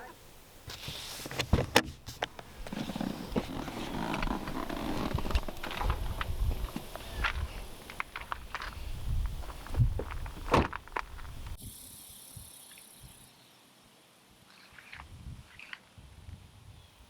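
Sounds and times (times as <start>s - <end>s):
faint hiss: 0.0s - 17.0s
footsteps: 0.6s - 11.6s
rustling and knocks: 0.6s - 11.6s.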